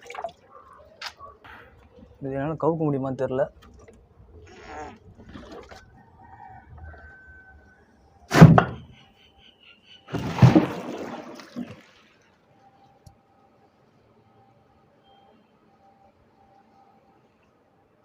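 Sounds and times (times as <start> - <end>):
water splashing from container: 0.0 - 0.4, 5.2 - 6.0, 10.1 - 12.2.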